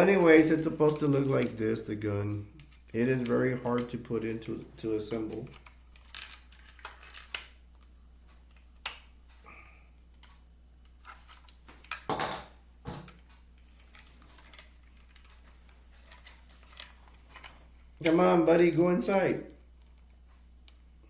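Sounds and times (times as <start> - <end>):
low steady hum: 0.0 - 21.0
plastic toy parts clicking: 2.6 - 4.5, 5.1 - 7.9, 13.0 - 18.2.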